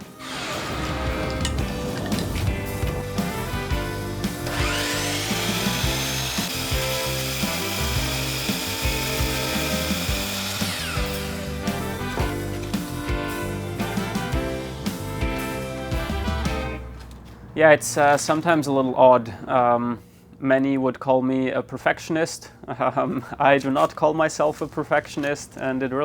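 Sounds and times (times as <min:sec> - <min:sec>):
power tool on wood: 0:00.0 - 0:02.5, 0:03.1 - 0:12.9
background music: 0:00.0 - 0:17.2.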